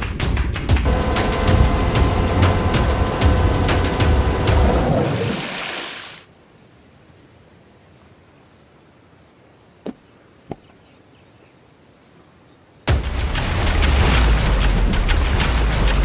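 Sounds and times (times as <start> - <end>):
loud noisy swell: 0.9 - 6.1.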